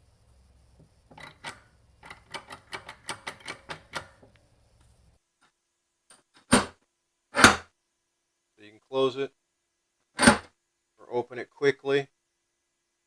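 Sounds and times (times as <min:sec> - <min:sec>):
sharp metal clicks of vise: 0:01.2 - 0:04.2, 0:10.2 - 0:10.5.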